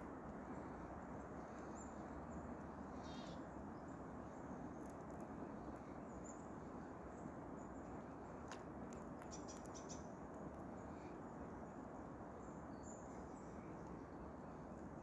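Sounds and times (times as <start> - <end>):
faint high bird chirps: 2.9 - 3.5, 9.3 - 10.1.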